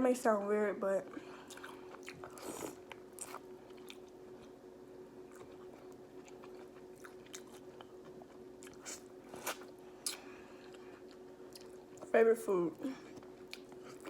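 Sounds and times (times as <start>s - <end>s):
faint steady hum: 0.0s - 14.0s
person chewing food: 1.3s - 4.6s, 5.2s - 12.1s, 13.0s - 14.0s.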